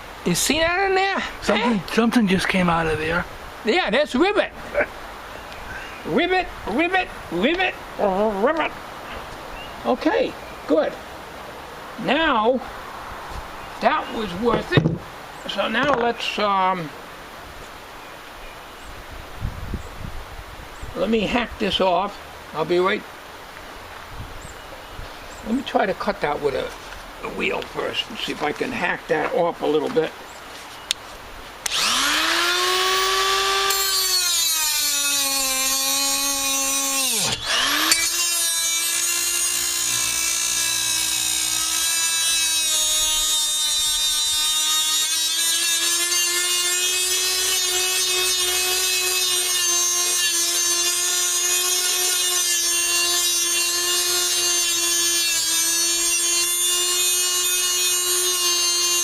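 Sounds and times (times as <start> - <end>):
angle grinder cutting metal: 31.6 - 59.0.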